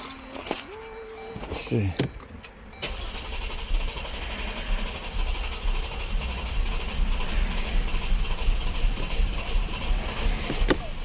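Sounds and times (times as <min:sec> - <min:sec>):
engine cranking on starter: 0:02.7 - 0:11.0.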